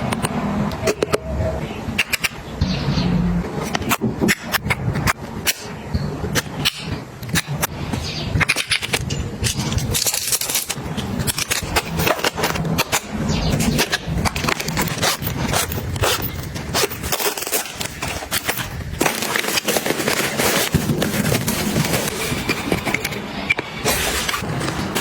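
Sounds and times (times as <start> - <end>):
packaging crinkling and scraping: 6.4 - 25.0.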